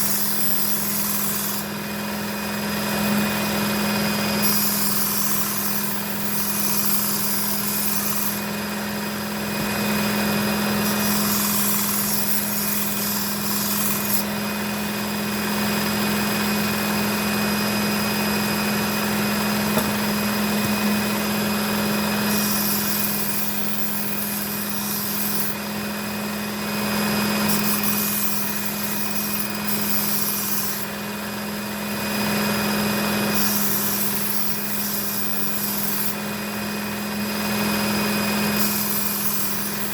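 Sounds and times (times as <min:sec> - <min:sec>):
knife grinding on belt: 0:00.0 - 0:01.7, 0:04.3 - 0:08.4, 0:09.6 - 0:14.3, 0:22.2 - 0:25.6, 0:27.4 - 0:30.9, 0:33.4 - 0:36.2, 0:38.6 - 0:39.9
belt sharpener motor hum: 0:00.0 - 0:39.9.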